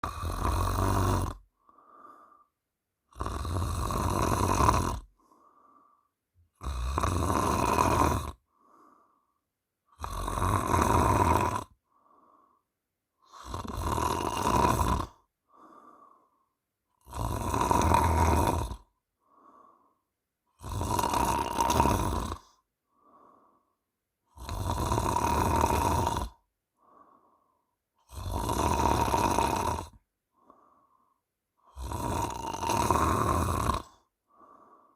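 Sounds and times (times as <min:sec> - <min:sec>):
woman snoring loudly: 0:00.0 - 0:01.5, 0:03.1 - 0:05.1, 0:06.5 - 0:08.4, 0:09.9 - 0:11.8, 0:13.2 - 0:15.8, 0:17.0 - 0:18.9, 0:20.5 - 0:22.6, 0:24.3 - 0:26.4, 0:28.0 - 0:30.0, 0:31.6 - 0:34.7
faint breath: 0:01.4 - 0:02.7, 0:05.1 - 0:06.3, 0:08.4 - 0:09.5, 0:11.8 - 0:13.3, 0:15.4 - 0:16.6, 0:19.2 - 0:20.1, 0:22.4 - 0:23.9, 0:26.7 - 0:27.8, 0:30.3 - 0:31.3, 0:33.9 - 0:34.9.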